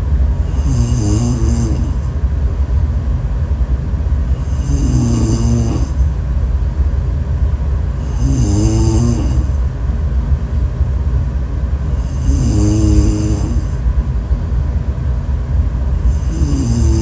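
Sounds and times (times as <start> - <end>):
steady low rumble: 0.0 - 17.0
person snoring loudly: 0.4 - 2.0, 4.4 - 6.0, 8.0 - 9.6, 12.0 - 13.8, 16.0 - 17.0.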